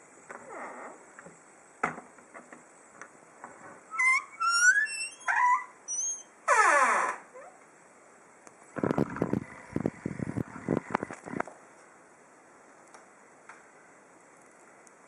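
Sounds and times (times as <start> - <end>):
creaking door hinges squeaking: 3.9 - 7.6.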